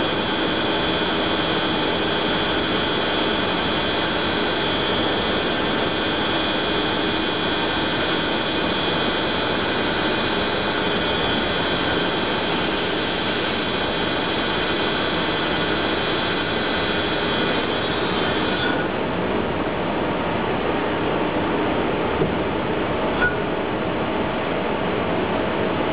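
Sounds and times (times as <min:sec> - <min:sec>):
lathe hiss and hum: 0:00.0 - 0:19.8.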